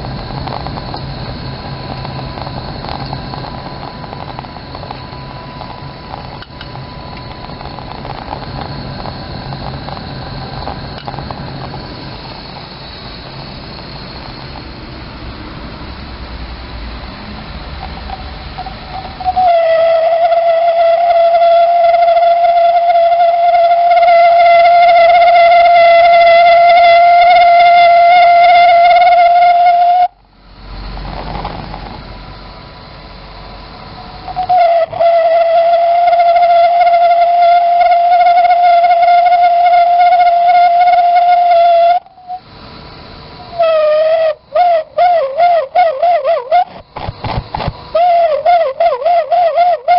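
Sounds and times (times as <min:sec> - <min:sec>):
heater rushing sound: 0:00.0 - 0:49.9
heater whistling tone: 0:00.0 - 0:49.9.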